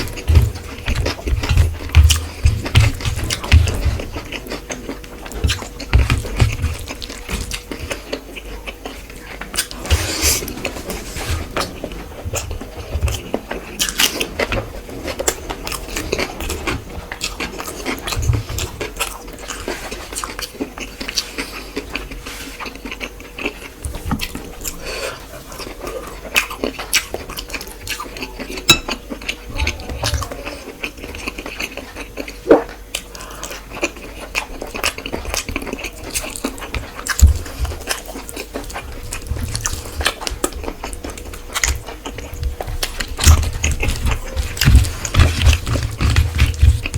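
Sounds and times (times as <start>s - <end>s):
chewing and wet mouth noises: 0.0s - 46.9s
clink against a plate: 28.7s - 29.0s.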